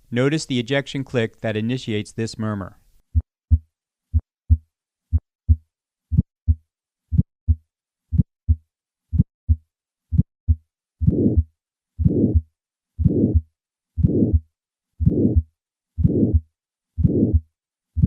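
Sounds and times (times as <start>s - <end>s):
heartbeat through stethoscope: 3.1s - 18.0s
heart ejection click: 9.2s - 9.6s, 10.2s - 12.4s, 13.0s - 13.4s, 15.0s - 15.4s, 16.0s - 16.4s, 17.0s - 17.4s
heart murmur: 10.2s - 14.4s, 15.0s - 17.5s.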